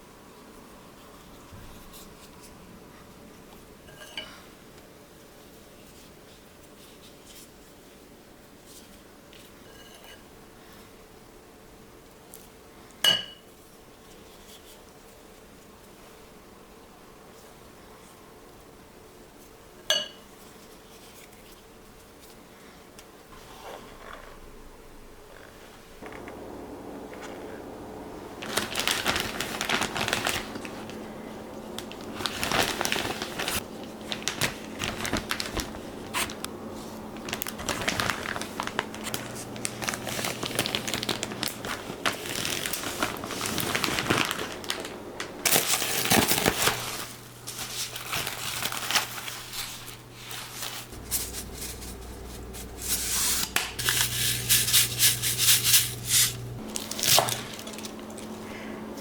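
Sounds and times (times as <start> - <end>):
crinkling and rustling: 25.4 - 59.0.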